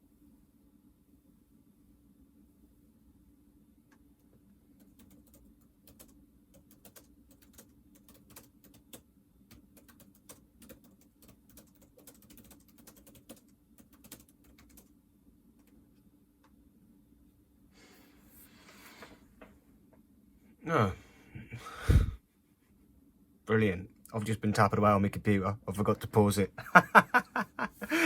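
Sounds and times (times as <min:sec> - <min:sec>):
typing on computer keyboard: 0:04.8 - 0:14.9.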